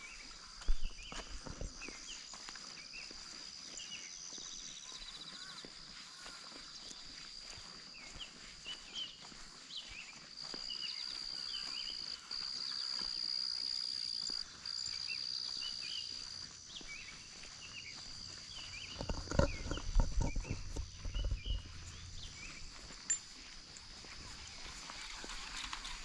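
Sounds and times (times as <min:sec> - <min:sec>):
birds chirping: 0:00.0 - 0:26.0
loud footsteps: 0:00.1 - 0:03.2, 0:16.1 - 0:26.0.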